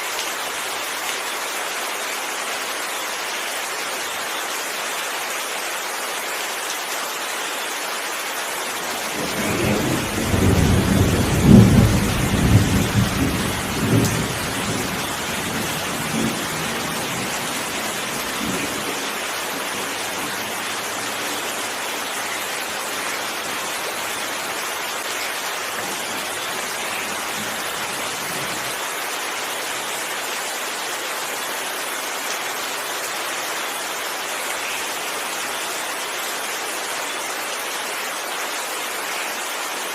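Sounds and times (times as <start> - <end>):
heavy rain: 0.0 - 39.9
rolling thunder: 9.1 - 21.8.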